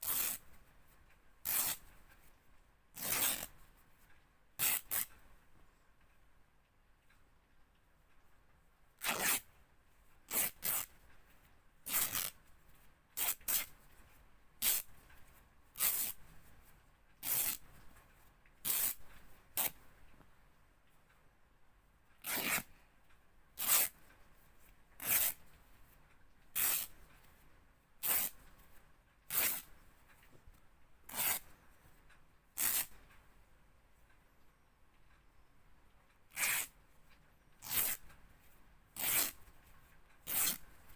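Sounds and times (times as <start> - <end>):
fabric ripping: 1.5 - 1.8, 3.0 - 3.5, 4.6 - 5.1, 9.0 - 9.4, 10.3 - 10.9, 11.9 - 12.3, 22.2 - 22.7, 26.6 - 26.9, 29.3 - 29.6, 31.1 - 31.4, 36.4 - 36.7, 39.0 - 39.4, 40.3 - 40.6.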